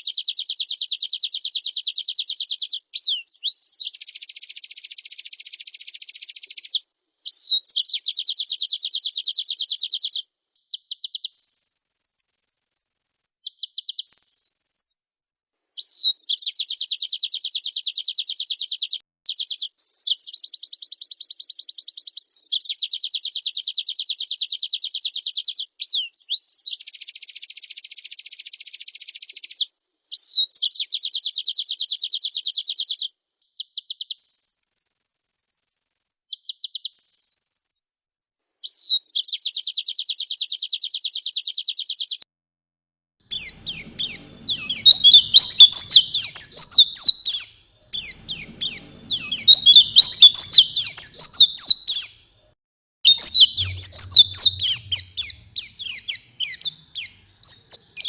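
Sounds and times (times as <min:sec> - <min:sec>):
bird song with trills: 0:00.0 - 0:15.0, 0:15.8 - 0:37.8, 0:43.3 - 0:52.4, 0:53.1 - 0:58.0
bird twittering: 0:10.8 - 0:15.0, 0:34.1 - 0:37.8, 0:43.3 - 0:52.3, 0:53.1 - 0:58.0.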